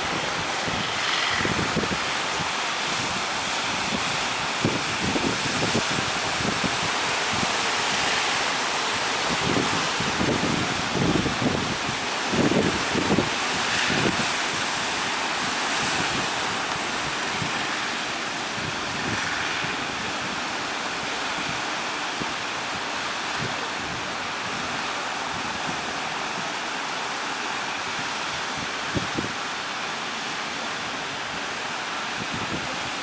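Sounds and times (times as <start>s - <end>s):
ocean surf breaking: 0.0s - 33.0s
wind buffeting microphone: 0.0s - 33.0s.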